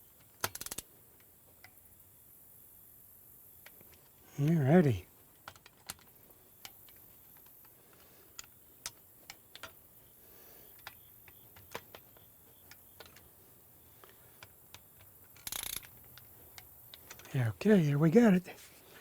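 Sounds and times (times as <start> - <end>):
metal parts and tools clicking: 0.2 - 0.8, 14.4 - 17.3.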